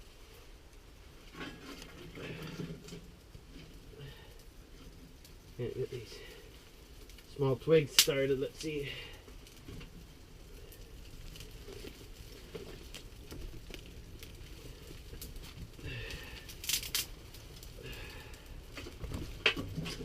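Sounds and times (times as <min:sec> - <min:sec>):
twigs crackling in wood stove: 0:00.0 - 0:20.0
sharp snaps: 0:07.9 - 0:08.2.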